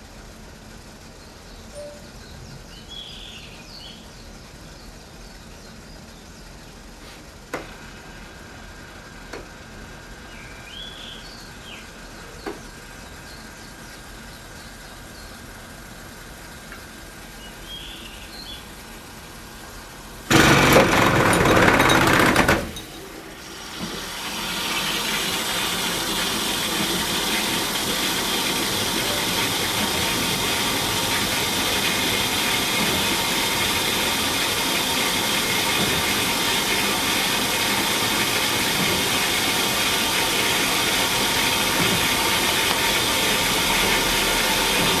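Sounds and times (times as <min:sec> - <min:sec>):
water softener humming: 0:18.7 - 0:45.0
loud water rushing burst: 0:20.3 - 0:45.0.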